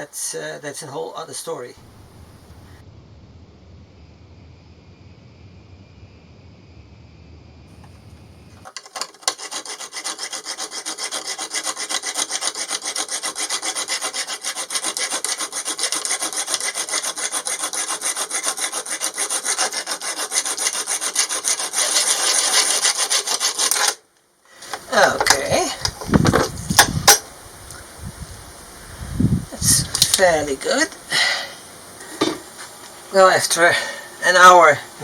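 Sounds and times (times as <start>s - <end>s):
sandpaper scraping strokes: 8.6s - 24.0s.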